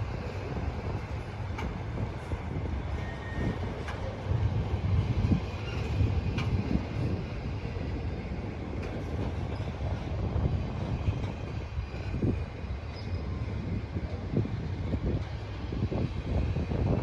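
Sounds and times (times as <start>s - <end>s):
train wheels rumbling on rail: 0.0s - 17.0s
train car clunks: 0.9s - 4.4s, 5.1s - 7.2s
faint high wheel squeal: 2.2s - 4.3s, 5.2s - 7.8s, 9.2s - 10.1s, 10.8s - 13.8s.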